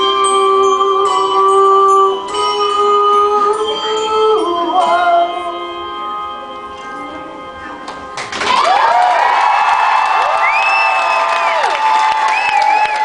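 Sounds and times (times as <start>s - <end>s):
handbells ringing chords: 0.0s - 7.8s.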